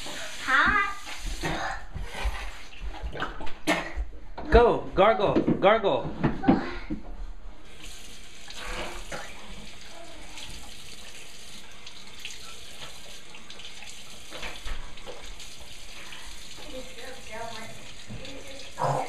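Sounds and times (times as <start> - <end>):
tap water running into sink: 0.0 - 2.5, 7.6 - 19.0.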